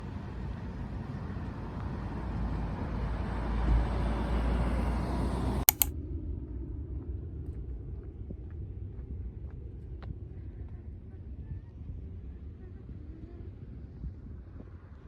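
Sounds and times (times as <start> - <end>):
sharp double click: 5.7 - 5.9.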